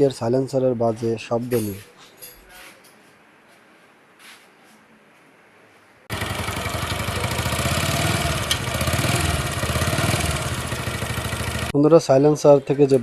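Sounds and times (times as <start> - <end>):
motorcycle engine idling: 6.1 - 11.7.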